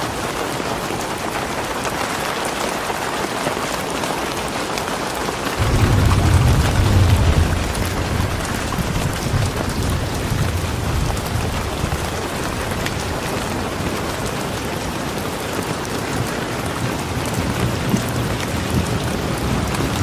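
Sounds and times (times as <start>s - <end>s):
steady rain falling: 0.0s - 20.0s
low rumble: 5.6s - 11.6s.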